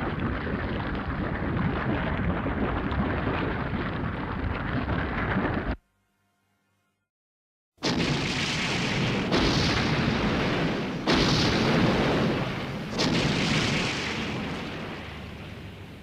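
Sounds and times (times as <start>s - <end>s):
explosions rumbling: 7.8s - 16.0s.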